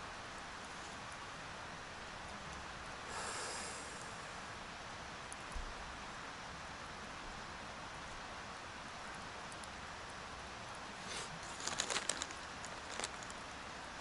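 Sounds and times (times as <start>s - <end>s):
rustling clicks: 11.4s - 13.4s.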